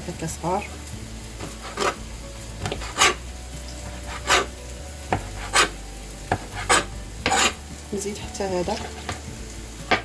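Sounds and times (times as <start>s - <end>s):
knife cutting on cutting board: 1.4s - 2.0s, 2.6s - 3.2s, 3.9s - 4.5s, 5.1s - 7.6s.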